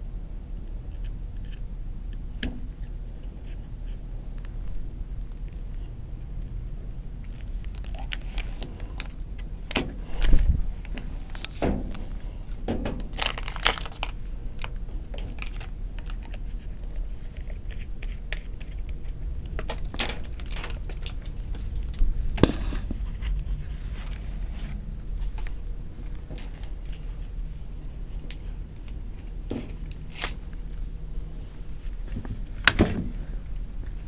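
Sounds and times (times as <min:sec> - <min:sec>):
steady low hum: 0:00.0 - 0:34.0
hard objects clicking and rattling: 0:07.3 - 0:23.3.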